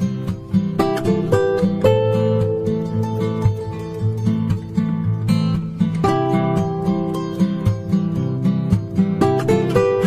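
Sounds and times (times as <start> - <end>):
acoustic guitar: 0.0 - 10.0.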